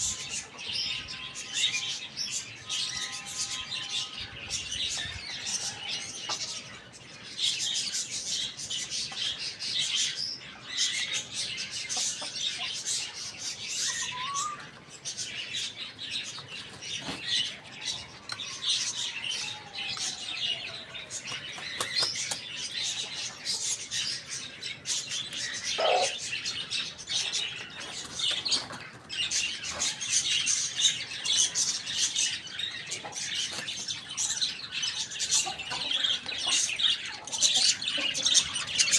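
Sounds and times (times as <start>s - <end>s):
small birds chirping: 0.0s - 38.9s
low bird calls: 13.8s - 14.8s, 25.3s - 28.8s.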